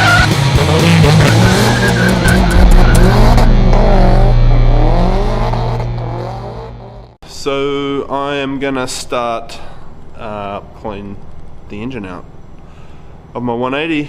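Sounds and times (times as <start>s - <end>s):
car engine running hard: 0.0s - 7.2s
tyres squealing: 1.0s - 3.5s.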